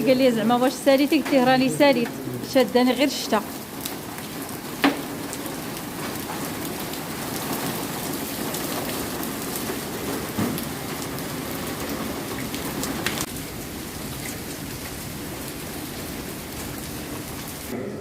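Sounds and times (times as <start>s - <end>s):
heavy rain pouring: 0.0s - 17.8s
sharp knocks: 4.8s - 5.1s.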